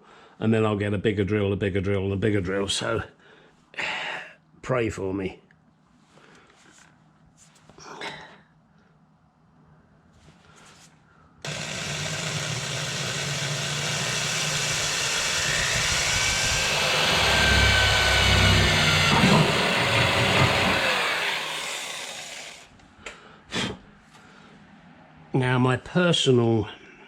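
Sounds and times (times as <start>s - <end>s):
electric drill boring through metal: 11.4s - 22.7s.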